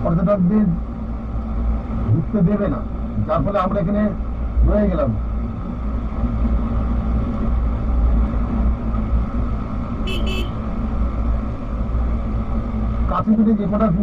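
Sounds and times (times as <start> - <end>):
road and wind rumble: 0.0 - 14.0
horn beeps: 10.1 - 10.6.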